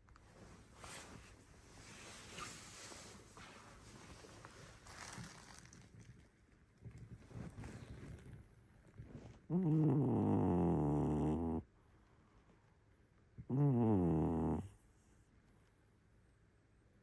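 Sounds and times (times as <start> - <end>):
cat snoring: 9.5 - 11.7, 13.4 - 14.8.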